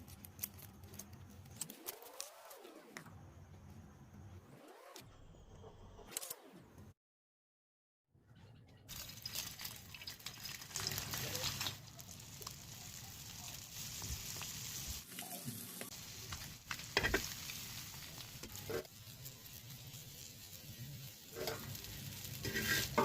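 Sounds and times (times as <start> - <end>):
food sizzling in hot oil: 8.9 - 23.0
utensil scraping a pan: 21.3 - 23.0.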